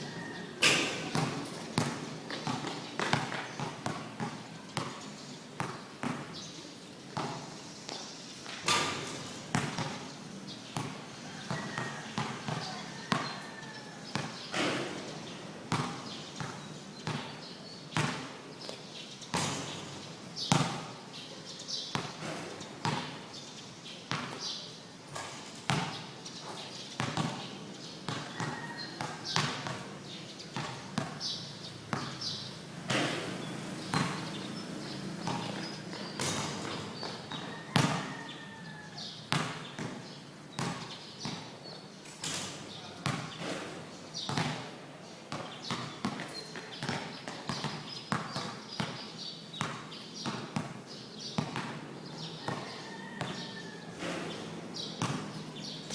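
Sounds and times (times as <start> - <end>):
basketball bouncing on hard court: 0.8 - 5.0, 5.6 - 6.3, 7.2 - 8.0, 8.6 - 10.1, 10.8 - 13.4, 14.1 - 15.0, 15.7 - 18.4, 20.5 - 20.9, 21.9 - 23.2, 24.1 - 24.4, 25.1 - 26.0, 27.0 - 27.5, 28.1 - 29.9, 30.6 - 31.3, 31.9 - 38.2, 39.3 - 41.5, 43.0 - 44.7, 45.3 - 53.4, 54.0 - 55.9.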